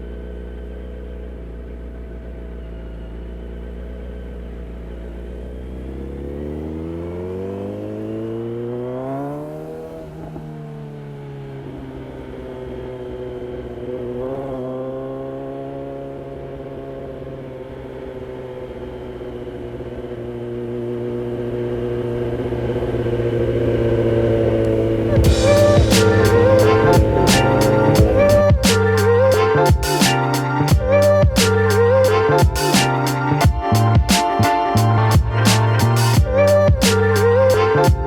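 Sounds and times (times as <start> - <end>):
motorcycle engine revving: 5.2 - 17.5, 18.2 - 30.0.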